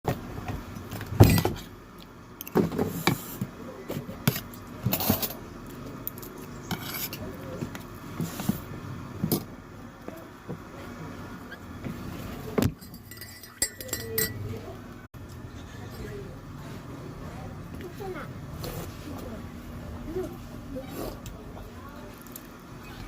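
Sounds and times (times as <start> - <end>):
utensils and dishes clicking: 12.6 - 14.5.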